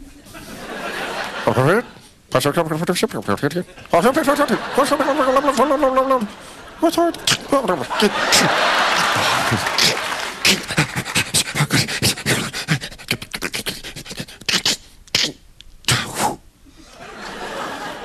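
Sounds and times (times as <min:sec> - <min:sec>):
man making mouth clicks: 0:07.2 - 0:07.6, 0:09.7 - 0:16.4
man making short hisses: 0:14.4 - 0:16.4.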